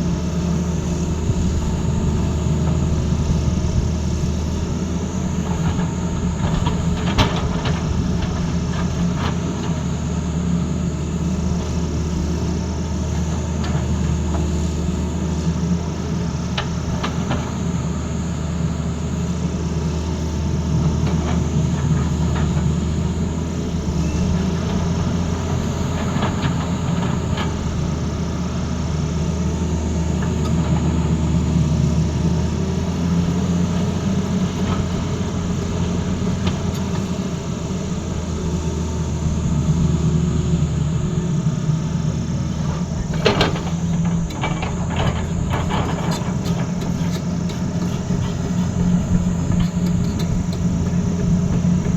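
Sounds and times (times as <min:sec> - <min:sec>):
excavator diesel engine running: 0:00.0 - 0:51.9
sharp clattering knocks: 0:43.1 - 0:51.9.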